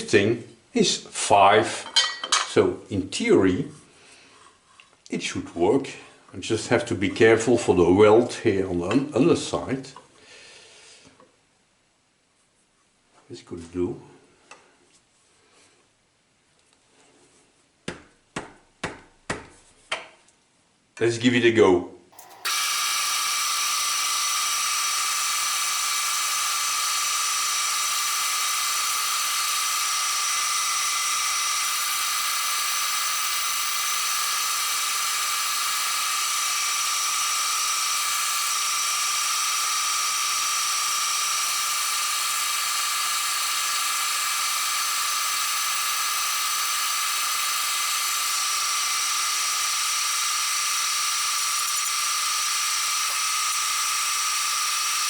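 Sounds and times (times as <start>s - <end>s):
milling machine whining: 22.2s - 55.0s.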